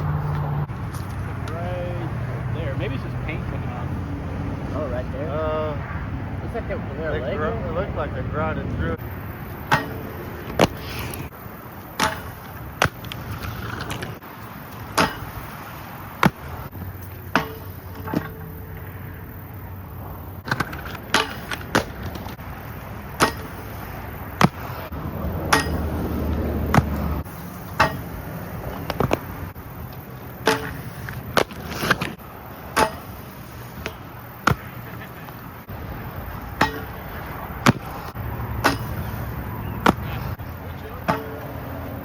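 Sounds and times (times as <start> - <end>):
skateboard rolling on pavement: 0.0 - 42.0
skateboard wheels clacking: 9.0 - 42.0.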